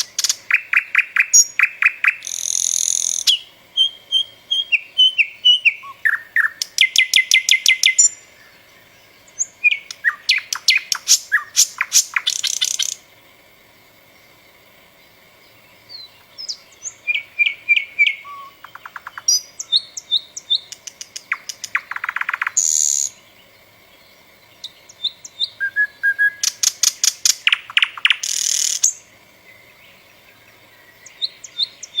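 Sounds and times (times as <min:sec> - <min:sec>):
songbird singing trills: 0:00.0 - 0:13.1, 0:15.3 - 0:32.0.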